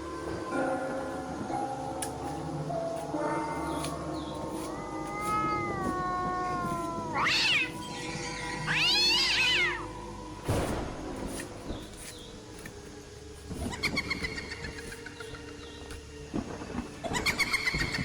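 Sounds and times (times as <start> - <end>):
cat meowing: 4.6 - 9.9
thump or rustle: 10.4 - 12.7.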